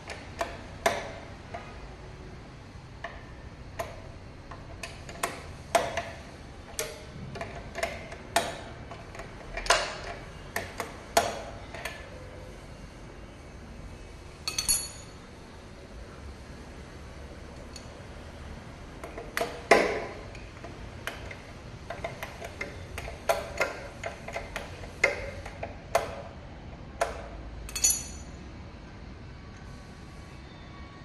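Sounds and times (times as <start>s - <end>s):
metal tools clinking: 14.5s - 15.2s, 27.7s - 28.4s.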